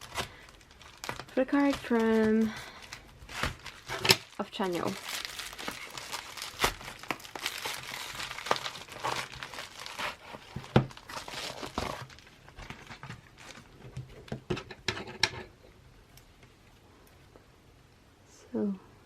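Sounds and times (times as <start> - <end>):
packaging crinkling: 0.0 - 14.4.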